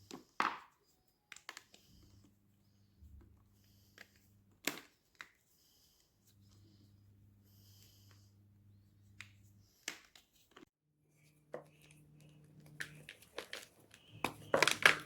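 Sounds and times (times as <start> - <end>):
faint low hum: 5.8 - 9.8.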